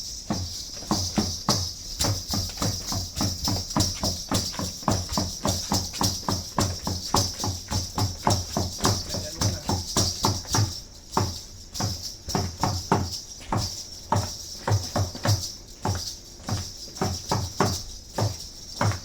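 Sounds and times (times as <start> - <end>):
rattles shaking: 0.0 - 19.0.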